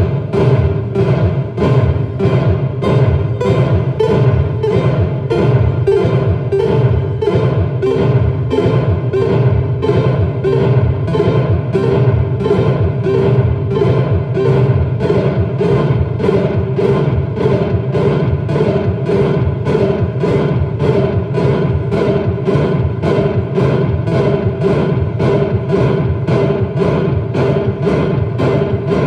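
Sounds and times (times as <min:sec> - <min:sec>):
low bass line: 0:00.0 - 0:17.2
repeating synth tone: 0:00.0 - 0:17.9
electronic beat pulse: 0:00.0 - 0:29.0.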